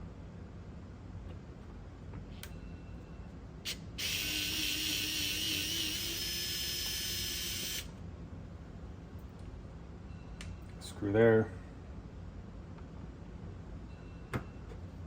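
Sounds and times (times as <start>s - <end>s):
electric screwdriver whirring: 3.7s - 7.9s.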